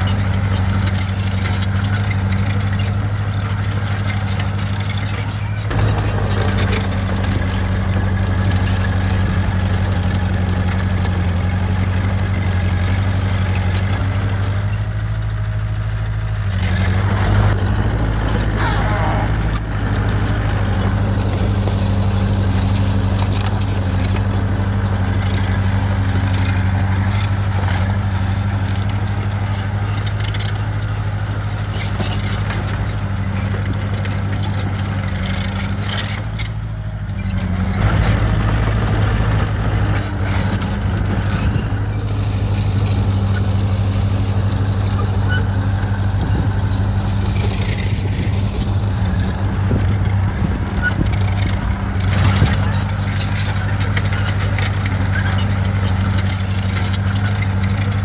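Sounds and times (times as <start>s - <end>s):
heavy diesel engine running: 0.0s - 58.0s
metallic clanking and rattling: 0.0s - 58.0s.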